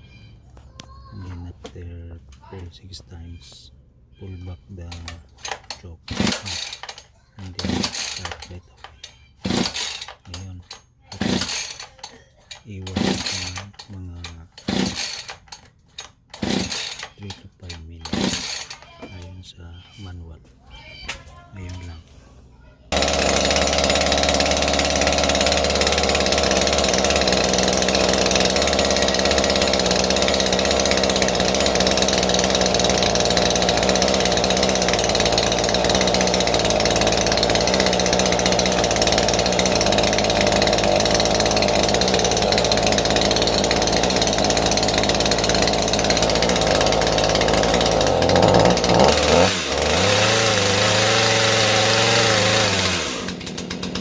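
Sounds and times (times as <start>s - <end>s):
chainsaw engine running: 4.2s - 20.2s, 21.5s - 22.0s, 22.9s - 54.0s.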